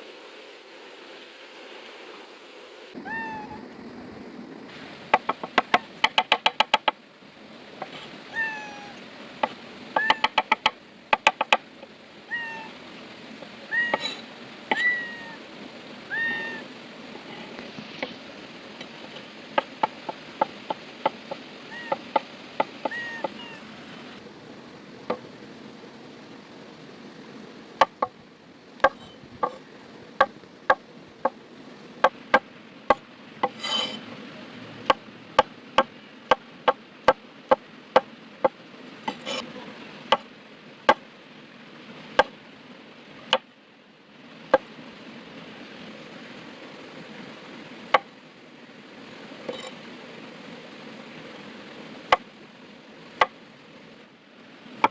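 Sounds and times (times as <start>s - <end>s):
river rushing: 0.0s - 54.9s
knife chopping on wooden board: 5.2s - 6.9s, 33.4s - 34.0s.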